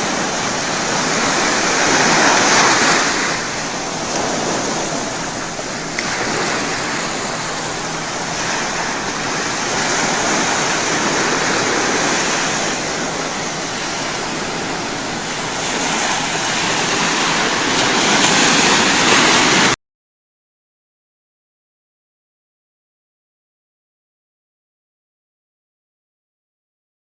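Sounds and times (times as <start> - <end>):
waves breaking on beach: 0.0 - 19.8.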